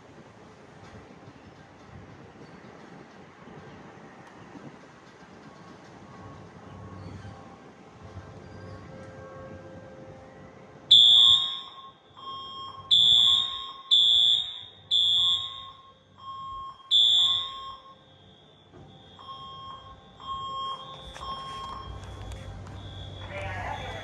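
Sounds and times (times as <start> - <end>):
fire alarm high-pitched blasts: 10.9 - 24.0
low repeating alarm beep: 10.9 - 24.0.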